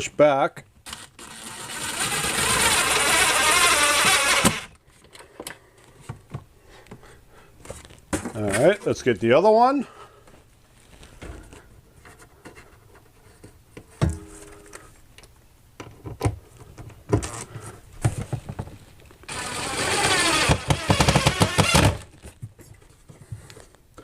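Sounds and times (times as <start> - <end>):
power drill driving screw: 0.9 - 4.8, 19.3 - 22.1.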